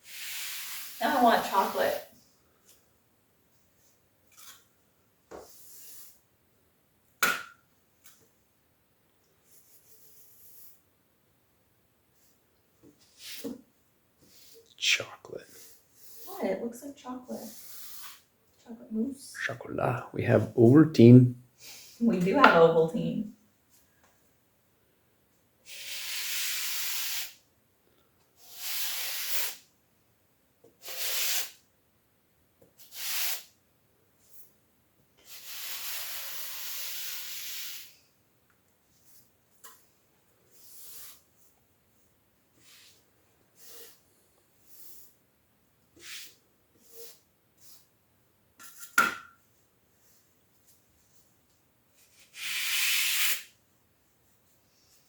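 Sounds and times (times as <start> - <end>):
grout float scraping tile floor: 13.1 - 13.6, 17.4 - 18.3, 40.5 - 41.3, 48.6 - 49.3.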